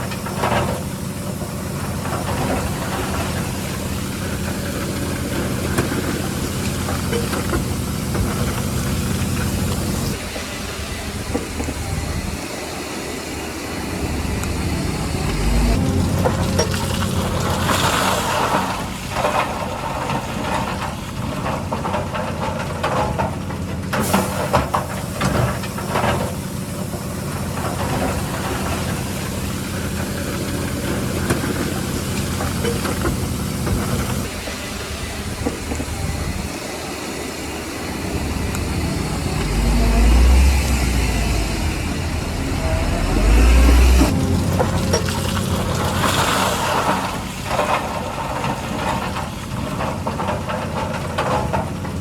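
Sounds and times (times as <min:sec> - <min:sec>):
heavy machinery diesel engines: 0:00.0 - 0:52.0
deep low rumbles: 0:13.4 - 0:18.3, 0:37.6 - 0:46.7.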